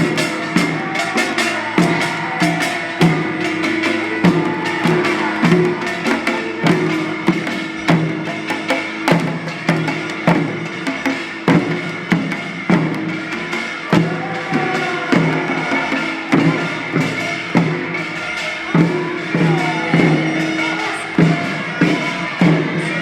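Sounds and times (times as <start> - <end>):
people singing: 0.0 - 8.8, 18.8 - 23.0
drum strokes: 0.0 - 23.0.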